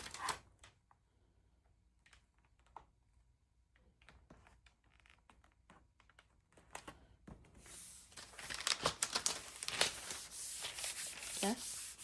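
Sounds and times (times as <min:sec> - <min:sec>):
hands rubbing plastic film: 0:07.6 - 0:12.0
plastic film crinkling: 0:07.8 - 0:11.6.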